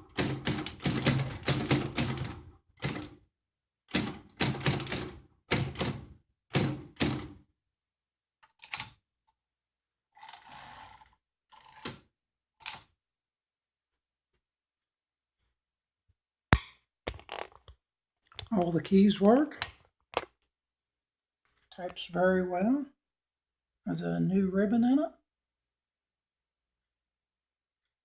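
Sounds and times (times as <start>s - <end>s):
typewriter keystrokes: 0.0s - 3.2s, 3.9s - 7.3s
typewriter rasping: 0.0s - 3.2s, 3.9s - 7.3s.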